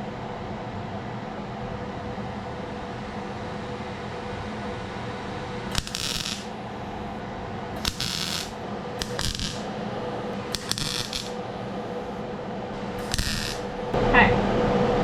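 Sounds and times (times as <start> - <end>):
steady hum: 0.0 - 15.0
welder crackling hiss: 5.7 - 6.6, 7.8 - 9.7, 10.4 - 11.4, 12.9 - 13.9
sharp click: 7.8 - 9.6, 10.4 - 11.4, 13.0 - 13.6.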